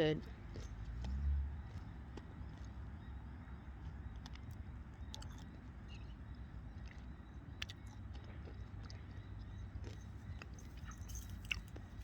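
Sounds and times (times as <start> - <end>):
person chewing crunchy candy: 5.1 - 5.6, 6.8 - 12.0.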